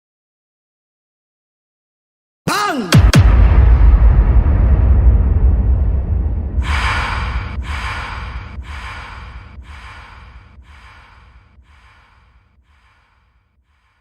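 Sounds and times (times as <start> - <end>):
echoing breathy noise burst: 2.6 - 14.0
deep boom: 2.9 - 12.5.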